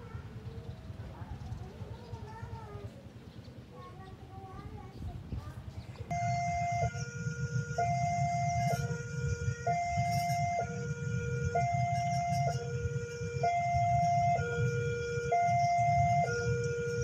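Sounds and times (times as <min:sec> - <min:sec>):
low vehicle rumble: 0:00.0 - 0:17.0
two-tone siren: 0:06.1 - 0:17.0.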